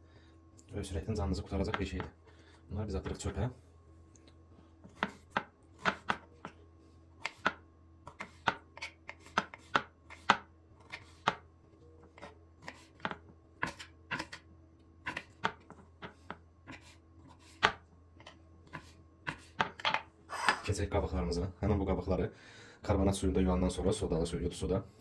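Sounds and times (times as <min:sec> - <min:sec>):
knife chopping on cutting board: 0:04.9 - 0:06.2, 0:07.2 - 0:11.4.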